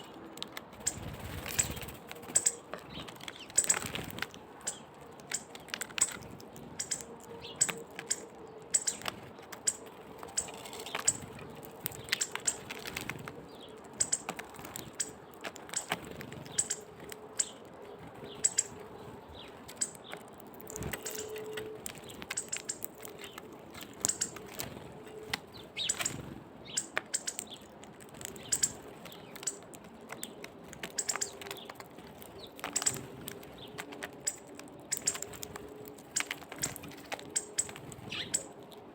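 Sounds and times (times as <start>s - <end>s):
birds pecking and cracking seeds: 0.0s - 38.9s
wing flutters: 0.7s - 2.6s.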